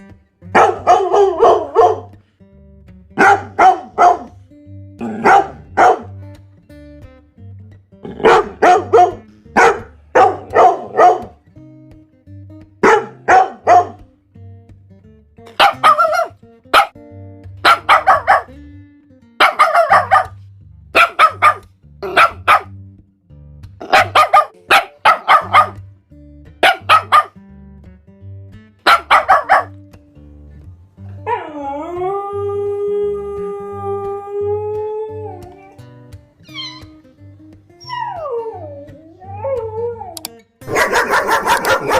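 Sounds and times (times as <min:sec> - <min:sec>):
background music: 0:00.0 - 0:41.9
dog barking: 0:00.5 - 0:02.1, 0:03.2 - 0:04.4, 0:05.0 - 0:06.1, 0:08.1 - 0:11.4, 0:12.8 - 0:14.0, 0:15.6 - 0:17.0, 0:17.6 - 0:18.6, 0:19.4 - 0:20.4, 0:21.0 - 0:22.7, 0:23.8 - 0:25.8, 0:26.6 - 0:27.4, 0:28.8 - 0:29.8, 0:40.6 - 0:41.9
dog howling: 0:31.3 - 0:35.8.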